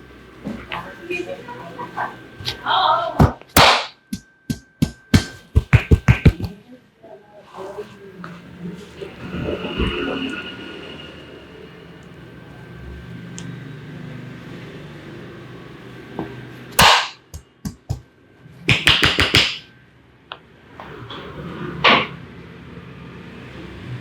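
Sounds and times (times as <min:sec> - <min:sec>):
hands slapping and clapping: 0:03.6 - 0:06.5, 0:18.7 - 0:19.6.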